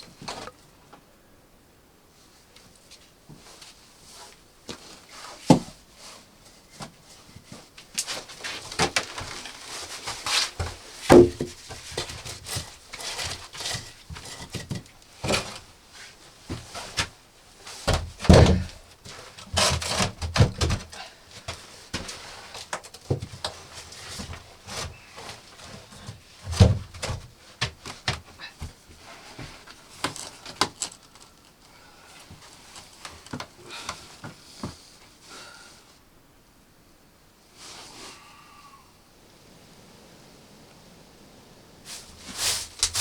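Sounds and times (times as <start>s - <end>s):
scraping and rustling: 3.4s - 34.9s, 41.8s - 43.0s
knocks and thuds: 11.1s - 11.7s, 17.9s - 18.8s.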